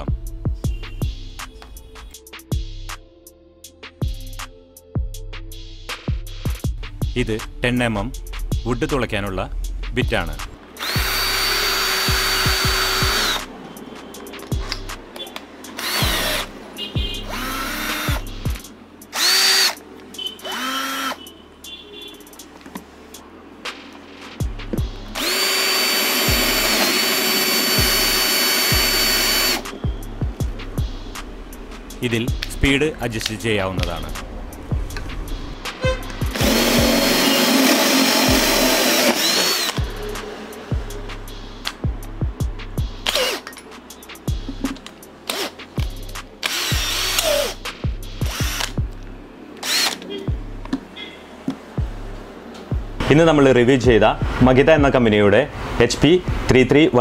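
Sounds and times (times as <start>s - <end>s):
cordless drill whining: 10.8s - 13.5s, 15.8s - 16.5s, 17.3s - 18.2s, 19.2s - 19.8s, 20.4s - 21.2s, 25.2s - 29.6s, 36.3s - 39.8s, 43.0s - 43.4s, 45.3s - 45.5s, 46.4s - 47.6s, 48.3s - 48.7s, 49.6s - 50.1s
trap beat bass notes: 27.8s - 37.2s, 39.8s - 43.1s, 50.3s - 50.6s.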